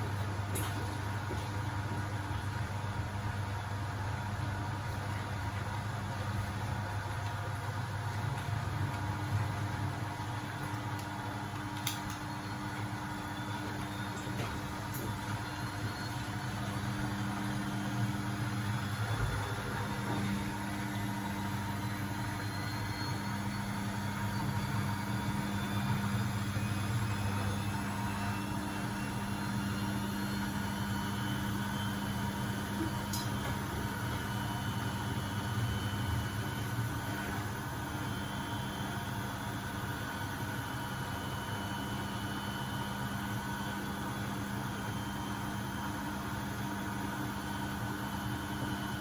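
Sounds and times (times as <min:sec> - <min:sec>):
motor hum: 0:00.0 - 0:46.9
washing machine drum spinning: 0:00.0 - 0:49.0.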